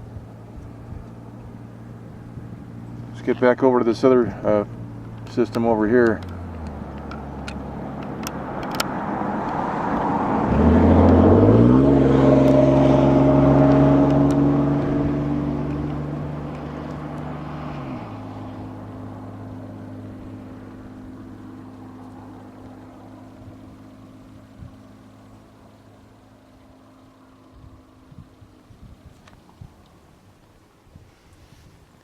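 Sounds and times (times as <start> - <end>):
motor vehicle driving past: 0.0 - 30.1.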